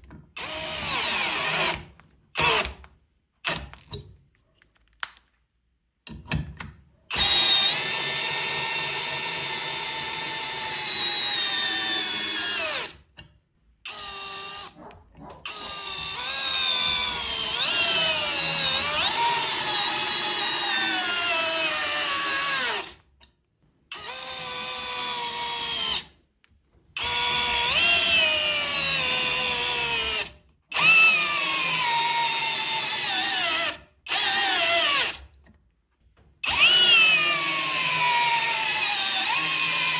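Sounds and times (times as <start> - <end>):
cordless drill motor whining: 0.4 - 1.8, 7.1 - 13.0, 13.9 - 14.8, 15.5 - 22.9, 23.9 - 26.1, 27.0 - 35.2, 36.4 - 39.9.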